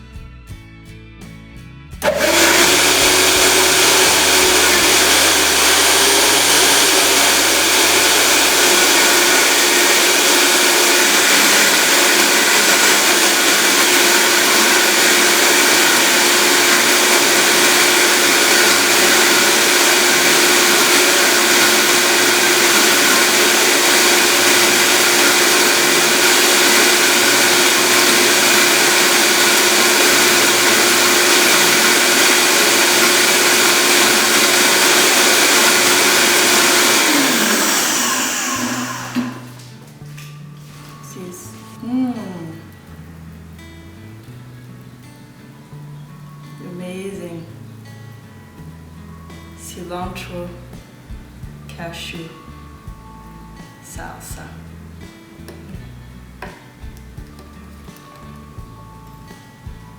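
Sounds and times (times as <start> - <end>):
blender running: 2.0 - 39.8.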